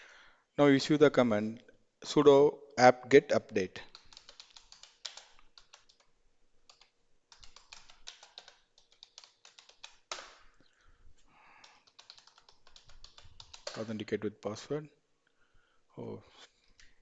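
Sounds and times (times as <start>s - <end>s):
typing on computer keyboard: 3.8s - 10.4s, 11.6s - 14.0s.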